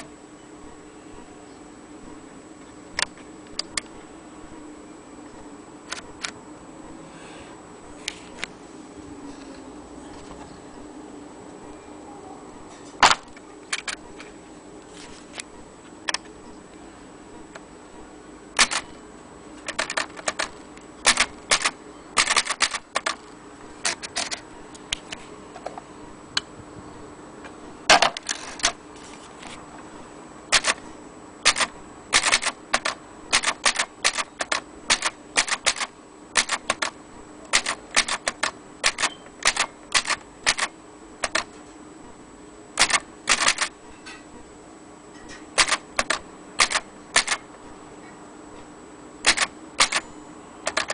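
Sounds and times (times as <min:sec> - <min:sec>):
typewriter keys clacking: 0:19.6 - 0:23.2, 0:30.6 - 0:30.8, 0:31.5 - 0:36.9, 0:37.5 - 0:41.5, 0:42.8 - 0:43.7, 0:45.6 - 0:47.4, 0:49.3 - 0:50.0, 0:50.7 - 0:50.9.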